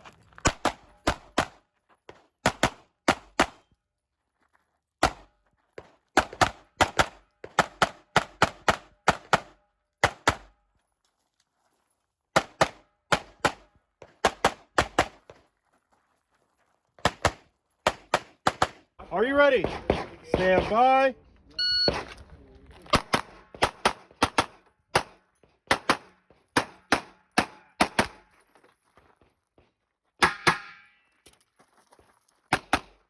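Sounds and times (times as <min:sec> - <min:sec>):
pistol gunshots: 0:02.4 - 0:03.6, 0:06.2 - 0:10.5, 0:12.4 - 0:15.2, 0:19.6 - 0:21.0, 0:22.9 - 0:28.2.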